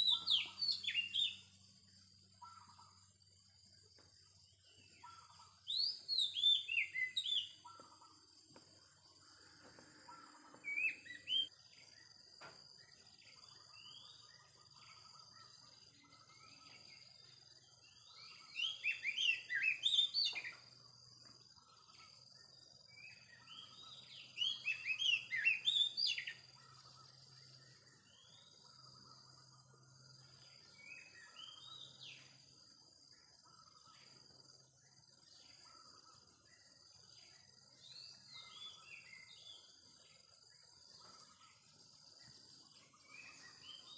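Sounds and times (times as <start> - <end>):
songbird singing whistled phrases: 0.0 - 1.6, 5.0 - 8.0, 10.6 - 11.6, 17.8 - 20.7, 22.9 - 28.5, 30.7 - 32.4, 37.8 - 39.8, 42.9 - 43.9.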